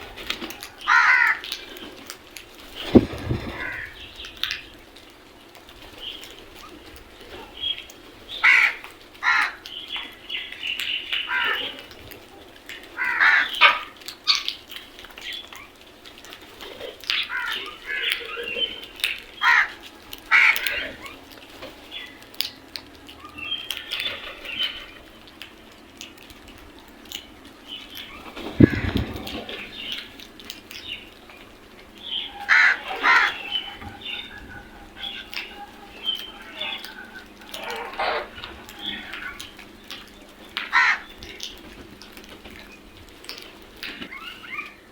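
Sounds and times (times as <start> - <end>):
crows cawing: 0.6 - 1.6, 3.2 - 4.0, 8.4 - 9.7, 11.3 - 11.7, 13.0 - 14.0, 17.2 - 18.2, 19.4 - 21.0, 32.3 - 39.6, 40.6 - 41.5
higher bird calls: 2.8 - 4.6, 27.6 - 42.9.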